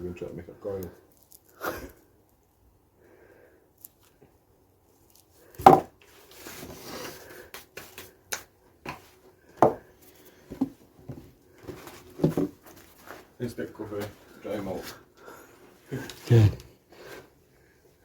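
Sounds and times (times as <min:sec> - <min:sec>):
hard objects knocking and clattering: 0:05.6 - 0:06.0, 0:09.6 - 0:09.9, 0:10.5 - 0:12.7.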